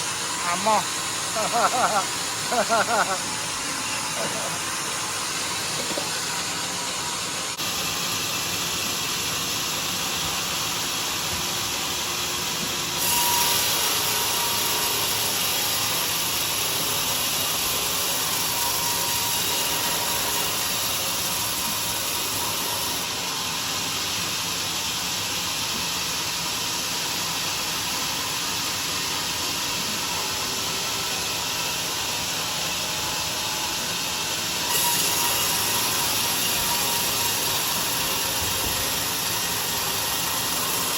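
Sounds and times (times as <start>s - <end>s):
sawmill sawing through log: 0.0s - 40.9s.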